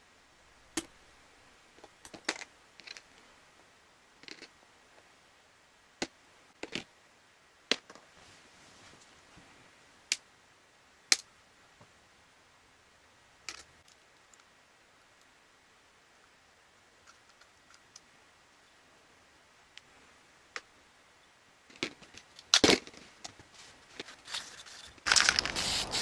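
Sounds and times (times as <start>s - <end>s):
small parts clicking and tapping: 1.8s - 3.1s, 13.5s - 14.5s, 24.0s - 26.0s.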